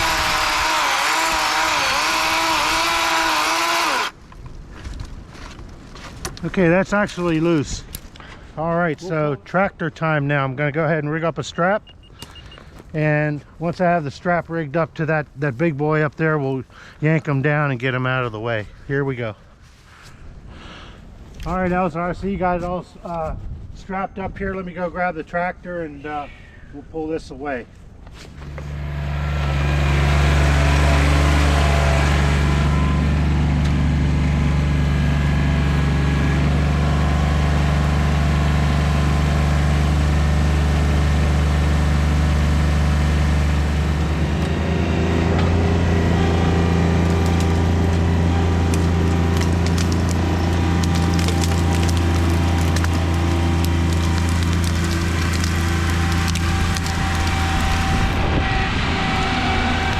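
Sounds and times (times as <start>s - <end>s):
wood cracking and splintering: 0.0s - 8.4s, 28.3s - 32.9s, 45.2s - 58.4s
tractor diesel engine running: 28.4s - 59.9s.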